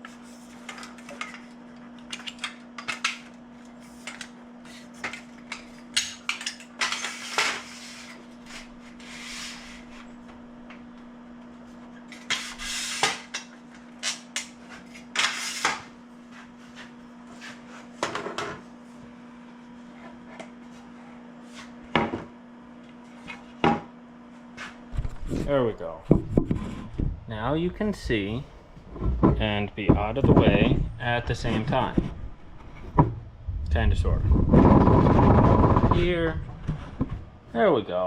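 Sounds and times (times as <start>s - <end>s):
steady low hum: 0.0s - 38.0s
items knocking and scraping: 18.0s - 18.6s, 24.9s - 27.2s, 28.8s - 33.3s, 34.2s - 37.3s.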